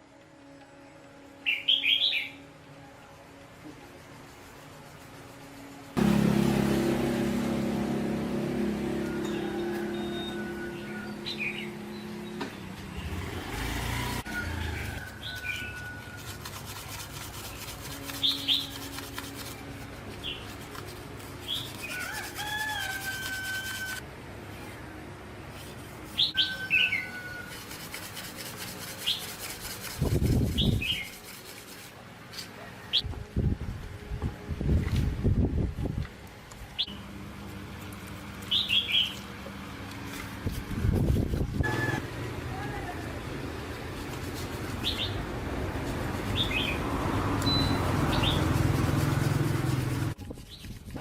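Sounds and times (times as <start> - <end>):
small birds chirping: 38.4 - 39.3, 44.6 - 45.2, 46.2 - 46.8.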